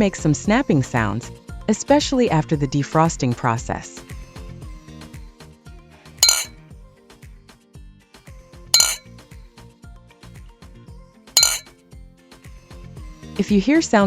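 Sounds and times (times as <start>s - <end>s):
glass bottles clinking: 6.2s - 6.5s, 8.8s - 9.0s, 11.4s - 11.7s.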